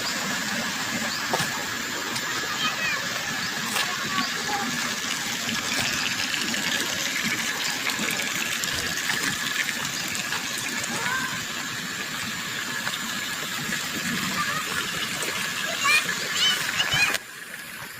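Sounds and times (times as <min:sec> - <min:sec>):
running water splashing: 0:00.0 - 0:17.9.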